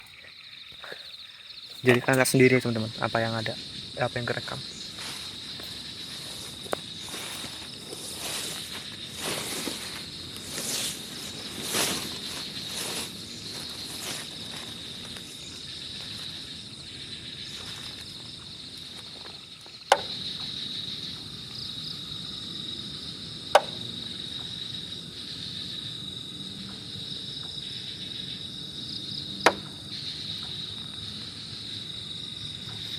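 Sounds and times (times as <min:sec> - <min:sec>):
crickets chirring: 0:00.0 - 0:32.9
rustling footsteps: 0:01.7 - 0:02.4, 0:04.8 - 0:16.4.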